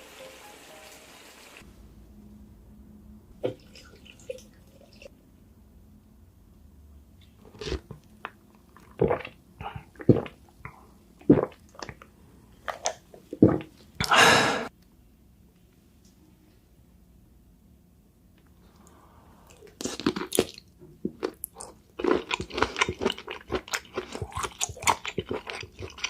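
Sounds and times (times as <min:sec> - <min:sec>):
wet chewing and smacking: 0:19.6 - 0:26.0.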